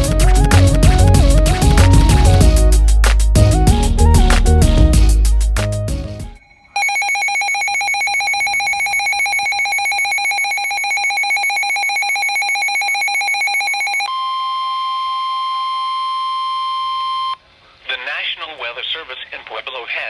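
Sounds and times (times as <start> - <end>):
intro music: 0.0 - 6.5
steady warning tone: 6.4 - 17.4.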